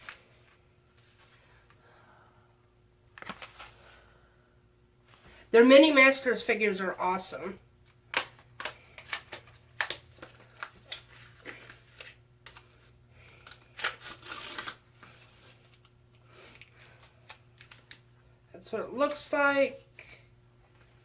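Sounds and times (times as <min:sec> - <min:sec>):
packaging rustle: 0:03.2 - 0:04.0
packaging clicks and taps: 0:08.1 - 0:12.6.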